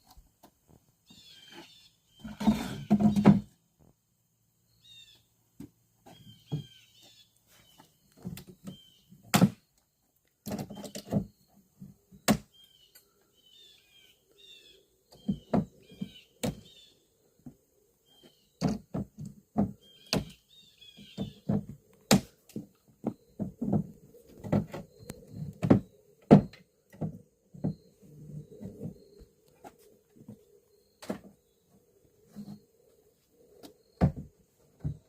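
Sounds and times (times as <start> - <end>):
knocks and thuds: 25.5 - 27.8, 34.0 - 35.0.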